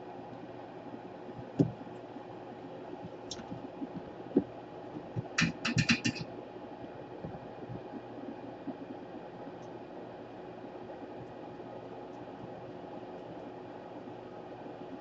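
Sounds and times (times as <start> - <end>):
steady low hum: 0.0 - 15.0
tool handling clicks and knocks: 5.2 - 6.2.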